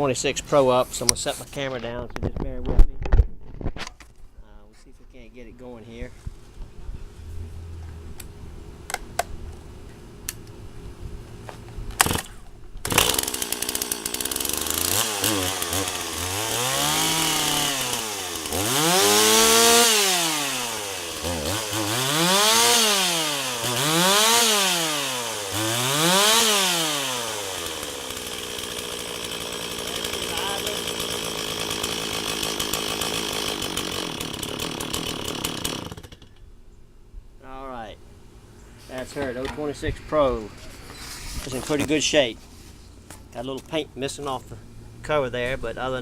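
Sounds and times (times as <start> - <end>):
chainsaw starter clicks: 11.9 - 24.5
chainsaw engine revving: 12.0 - 36.4.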